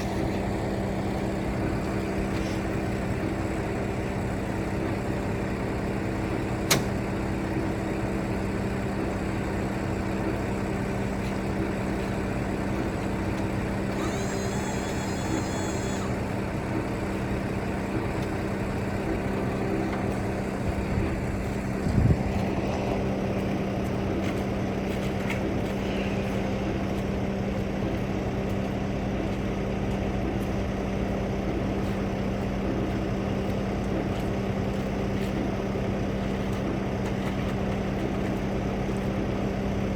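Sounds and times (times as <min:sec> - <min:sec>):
engine running: 0:00.0 - 0:39.9
sharp click: 0:06.7 - 0:06.9.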